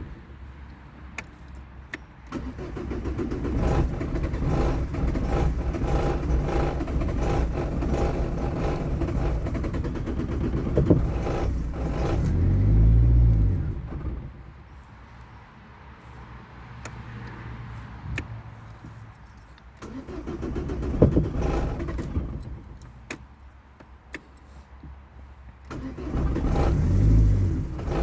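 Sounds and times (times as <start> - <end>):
car engine cranking: 2.2 - 14.6, 18.2 - 23.4, 25.6 - 28.0.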